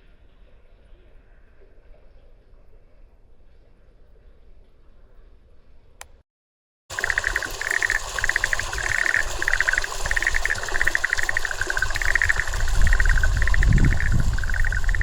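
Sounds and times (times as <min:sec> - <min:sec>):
animal calls trilling: 0:07.0 - 0:15.0.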